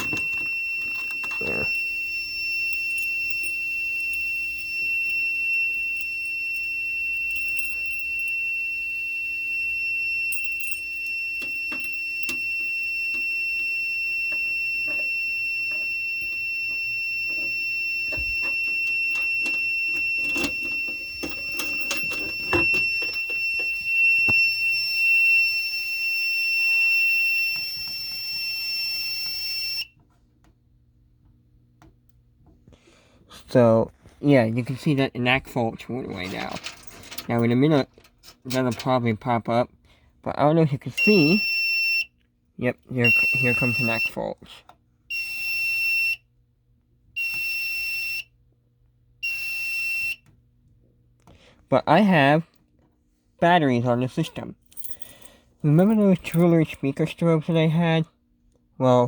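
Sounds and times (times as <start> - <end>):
fire alarm tone: 0.0 - 30.0, 40.9 - 42.2, 43.0 - 44.4, 45.1 - 46.3, 47.2 - 48.4, 49.2 - 50.3, 54.0 - 56.8.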